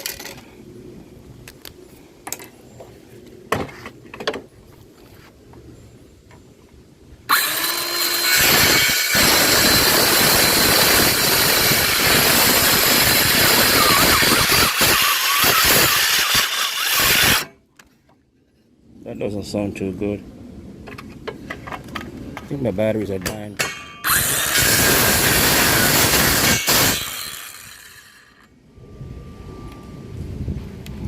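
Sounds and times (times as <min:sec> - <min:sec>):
power saw cutting wood: 0:07.3 - 0:17.5, 0:24.0 - 0:28.5.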